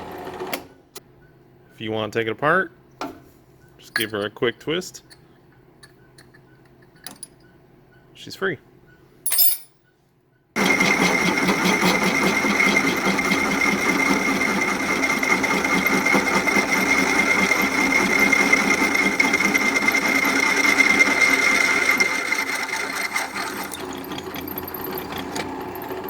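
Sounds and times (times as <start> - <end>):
drill press motor whine: 10.6 - 26.0.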